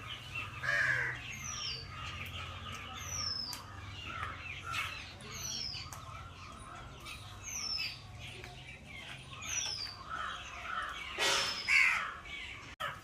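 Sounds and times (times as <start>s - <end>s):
birds chirping: 0.0s - 13.0s
falling whistled bird call: 11.2s - 12.0s.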